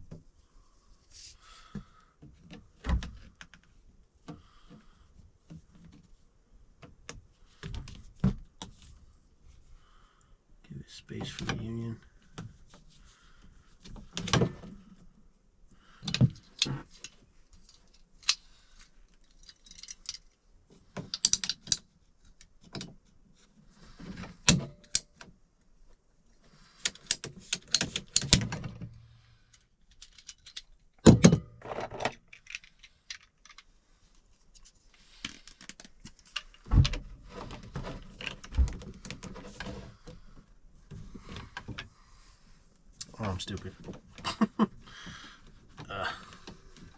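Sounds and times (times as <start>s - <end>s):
plastic pipes clacking and rattling: 13.8s - 15.0s, 16.0s - 23.1s, 26.6s - 33.7s, 34.5s - 41.9s.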